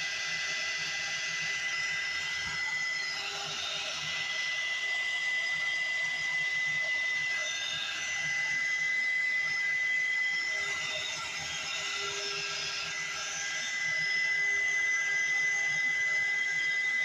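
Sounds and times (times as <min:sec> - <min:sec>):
heat gun blowing with whine: 0:00.0 - 0:17.0.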